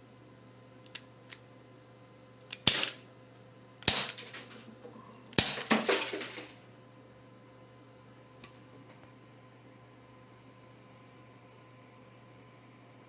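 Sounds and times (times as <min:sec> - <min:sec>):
air pistol shots cracking: 0:02.6 - 0:03.0, 0:03.8 - 0:04.3, 0:05.4 - 0:05.6.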